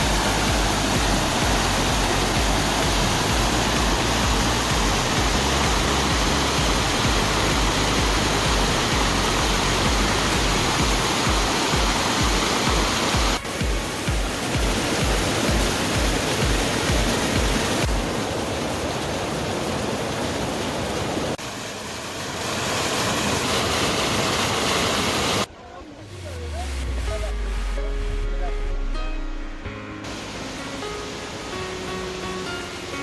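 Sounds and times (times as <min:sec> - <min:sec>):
background music: 0:00.0 - 0:17.6, 0:26.0 - 0:33.0
waterfall rushing: 0:00.0 - 0:33.0.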